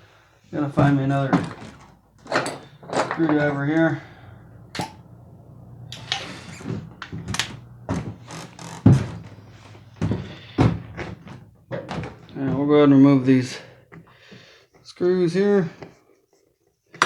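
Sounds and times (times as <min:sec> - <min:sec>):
hand tools clattering: 0:00.6 - 0:13.7.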